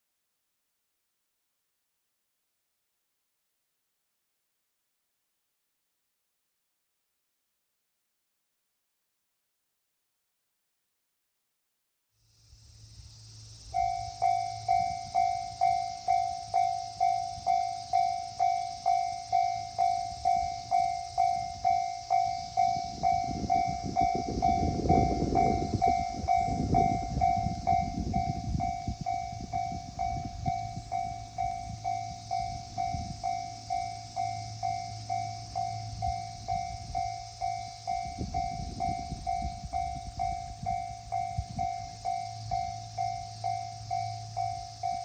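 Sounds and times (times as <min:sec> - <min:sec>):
train rumbling: 0:13.0 - 0:45.0
level-crossing alarm bell: 0:13.7 - 0:45.0.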